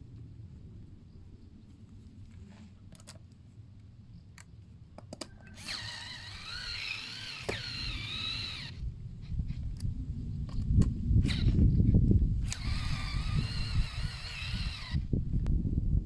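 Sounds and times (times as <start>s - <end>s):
cordless drill whine: 5.4s - 8.8s, 11.2s - 11.7s, 12.4s - 15.2s.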